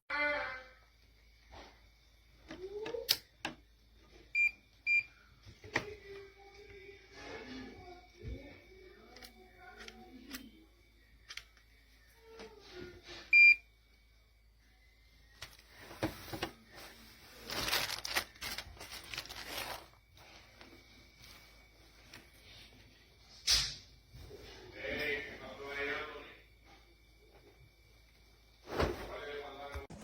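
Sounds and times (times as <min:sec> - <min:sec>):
rustling handling noise: 0:15.4 - 0:22.7.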